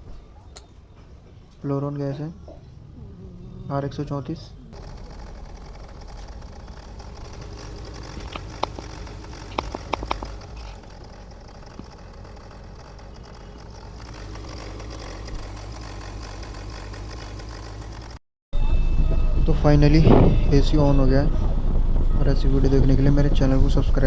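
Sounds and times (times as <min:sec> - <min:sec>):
car engine idling: 0:03.8 - 0:18.2
sharp clicks: 0:04.7 - 0:18.2.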